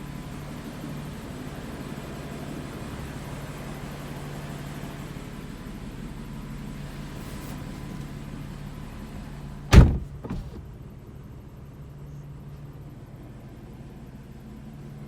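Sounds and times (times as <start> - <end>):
car hum: 0.0 - 14.6
loud sharp thump: 9.7 - 10.7.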